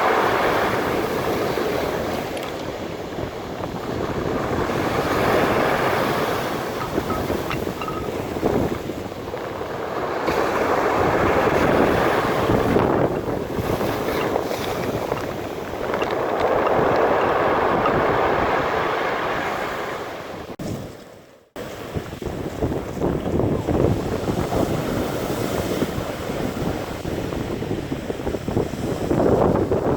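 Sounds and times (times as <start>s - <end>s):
waves breaking on beach: 0.0s - 20.8s
wind buffeting microphone: 0.0s - 20.9s, 21.6s - 29.9s.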